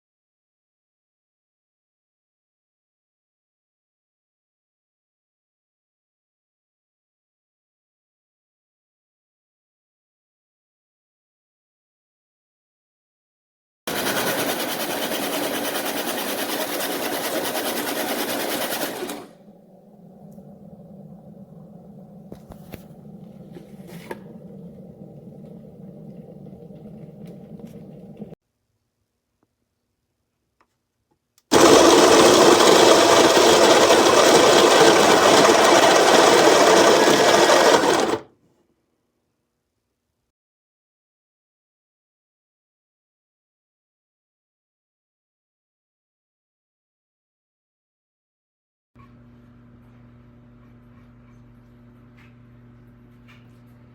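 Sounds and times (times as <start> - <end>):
coffee grinder motor running: 13.9 - 28.3, 31.5 - 38.3
faint low hum: 19.2 - 30.4.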